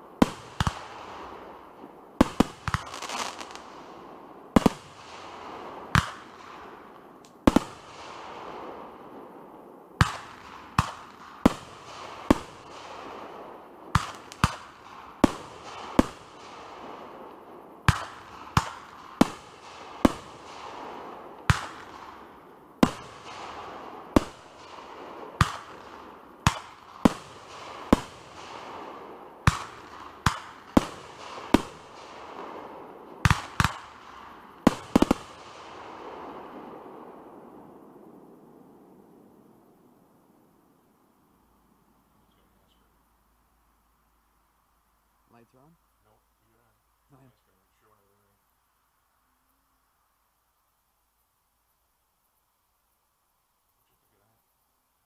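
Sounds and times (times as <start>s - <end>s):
fireworks bangs: 0.0s - 9.4s, 10.0s - 37.8s
steady hiss: 0.0s - 55.0s.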